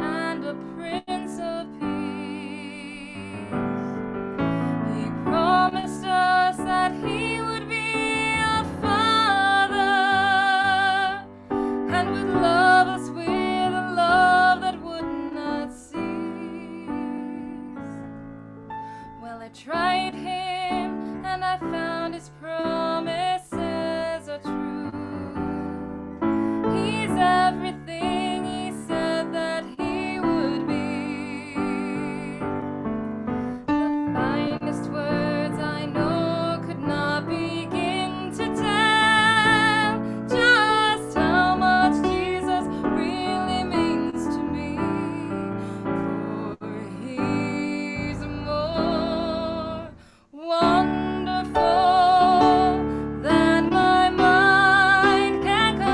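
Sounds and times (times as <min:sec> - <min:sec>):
slow piano music: 0:00.0 - 0:55.9.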